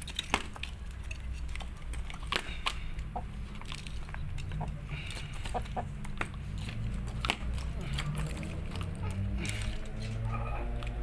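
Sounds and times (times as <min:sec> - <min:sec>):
chicken clucking: 0:04.4 - 0:06.0.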